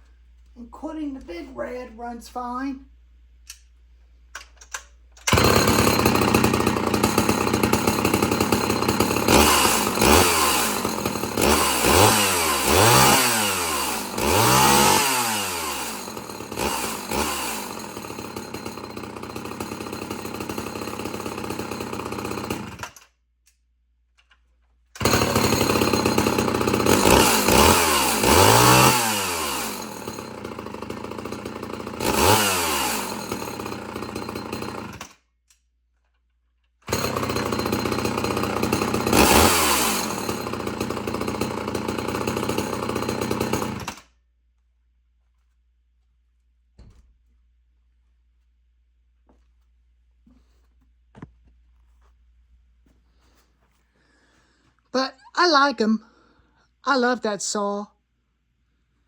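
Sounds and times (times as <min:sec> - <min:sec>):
chainsaw revving: 0:05.2 - 0:23.0, 0:25.0 - 0:35.2, 0:36.9 - 0:44.1.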